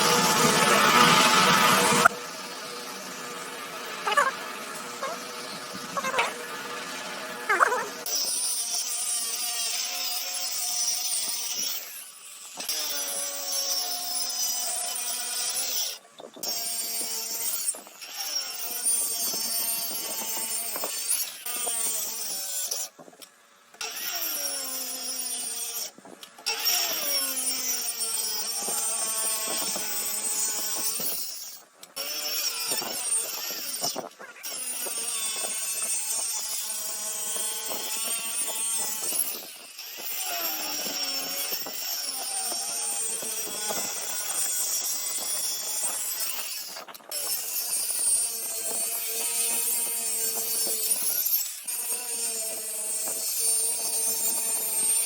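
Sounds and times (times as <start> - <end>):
squealing bending tones: 4.0 - 6.6
wood being sawn by hand: 23.8 - 55.0.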